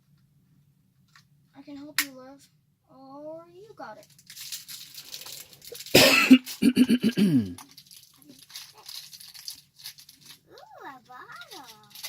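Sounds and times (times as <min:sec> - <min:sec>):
plastic wrapping crinkling: 0:04.0 - 0:12.0
person coughing loudly: 0:05.9 - 0:07.6.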